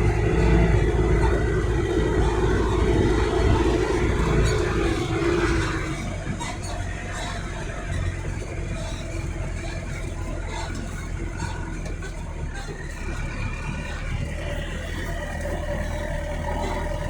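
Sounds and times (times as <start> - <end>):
motor vehicle rumbling: 0.0 - 17.0.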